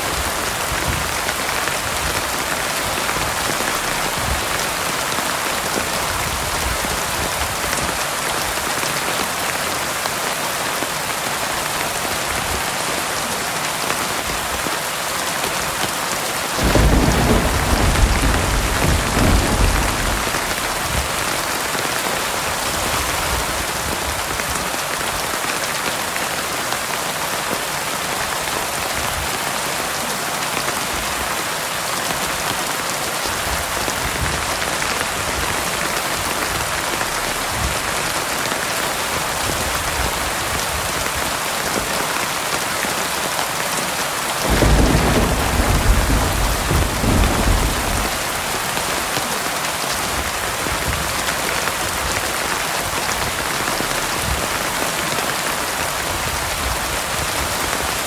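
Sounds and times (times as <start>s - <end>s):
heavy rain falling: 0.0s - 58.0s
thunder clap rumbling: 0.8s - 7.3s, 16.6s - 23.7s, 44.4s - 49.1s.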